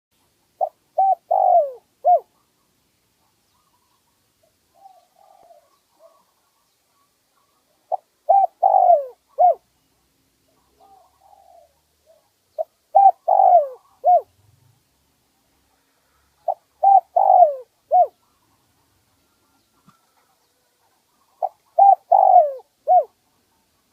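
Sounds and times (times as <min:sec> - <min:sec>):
dove cooing: 0:00.6 - 0:02.6, 0:03.5 - 0:09.7, 0:10.6 - 0:14.4, 0:16.0 - 0:23.2.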